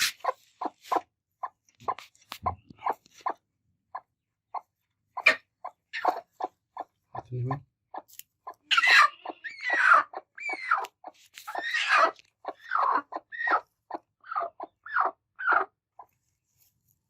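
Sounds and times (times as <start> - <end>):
hens squawking and growling: 5.2 - 15.8.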